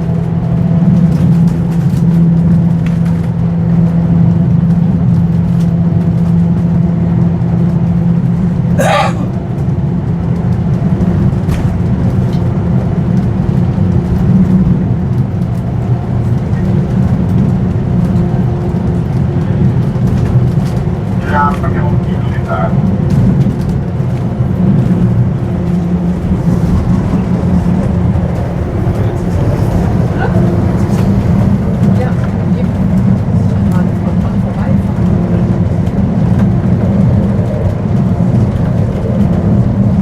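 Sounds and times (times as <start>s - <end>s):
tram rumbling: 0.0s - 40.0s.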